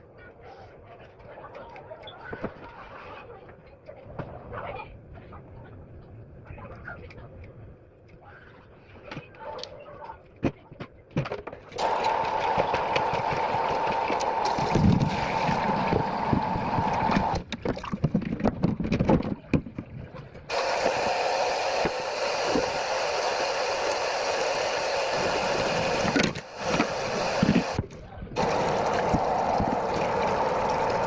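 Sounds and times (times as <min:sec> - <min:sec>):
tap water running: 0:11.8 - 0:17.4, 0:20.5 - 0:27.8, 0:28.4 - 0:31.0.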